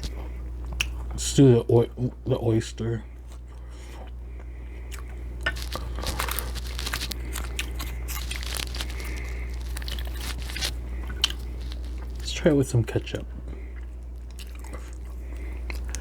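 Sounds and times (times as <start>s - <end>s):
wet chewing and mouth clicks: 0.0s - 1.1s, 4.0s - 12.3s, 13.5s - 16.0s
low steady hum: 0.0s - 16.0s.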